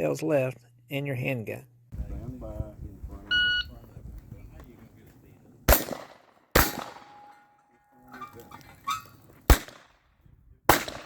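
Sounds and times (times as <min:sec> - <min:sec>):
pistol shot: 0:05.7 - 0:07.4, 0:09.5 - 0:10.0, 0:10.7 - 0:11.0
shotgun blasts: 0:05.7 - 0:07.4, 0:09.5 - 0:10.0, 0:10.7 - 0:11.0.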